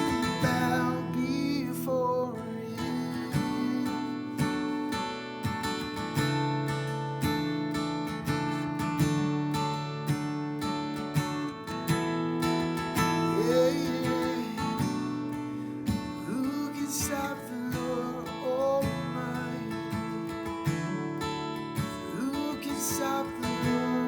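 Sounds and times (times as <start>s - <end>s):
acoustic guitar strumming chords: 0.0s - 24.0s.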